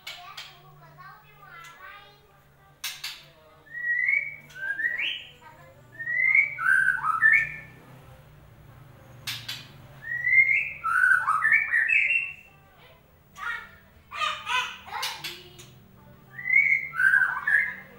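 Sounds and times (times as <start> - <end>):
bird singing whistled notes: 3.7 - 7.8, 9.3 - 12.5, 16.3 - 17.9.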